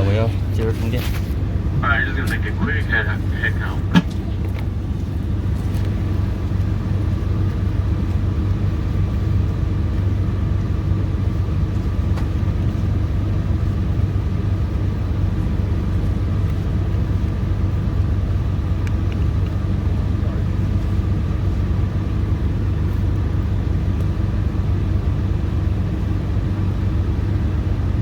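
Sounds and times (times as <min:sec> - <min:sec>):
diesel engine drone: 0:00.0 - 0:28.0
faint high whine: 0:01.3 - 0:04.4.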